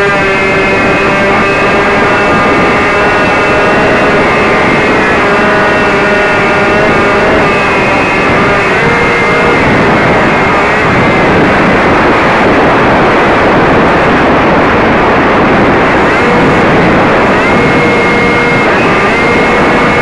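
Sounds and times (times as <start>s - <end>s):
model plane motor whine: 0.0s - 20.0s
wind rushing over microphone: 0.0s - 20.0s.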